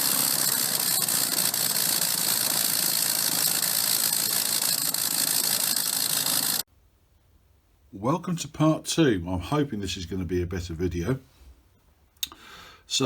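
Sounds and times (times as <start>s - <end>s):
motor running with hiss: 0.0s - 6.6s.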